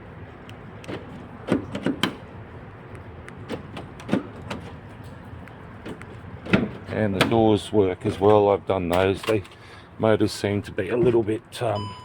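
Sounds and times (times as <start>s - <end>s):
van door locks clicking: 0.8s - 2.3s, 3.3s - 4.8s.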